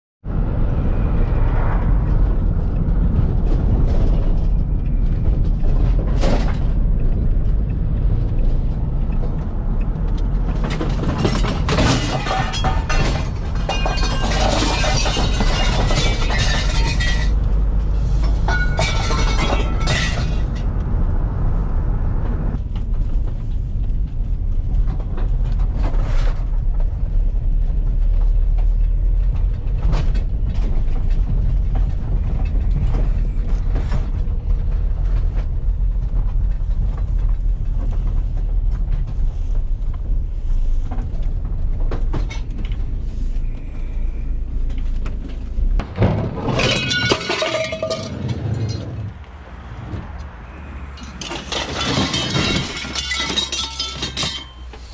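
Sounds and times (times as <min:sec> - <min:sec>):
vehicle rumbling: 0:00.2 - 0:54.9
metallic clattering: 0:10.4 - 0:20.8, 0:45.8 - 0:49.1, 0:51.0 - 0:54.9
loose metal clinking and rattling: 0:10.6 - 0:20.6, 0:46.5 - 0:48.9, 0:51.0 - 0:54.9.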